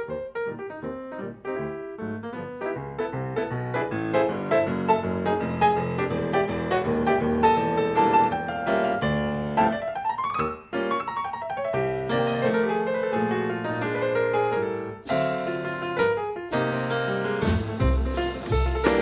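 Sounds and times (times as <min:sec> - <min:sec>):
jazz piano playing: 0:00.0 - 0:19.0
drums: 0:15.0 - 0:19.0.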